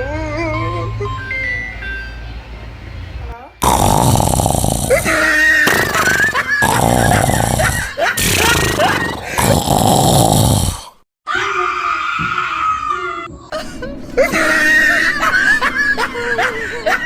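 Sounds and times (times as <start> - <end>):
loud rasping snore: 3.6 - 11.0.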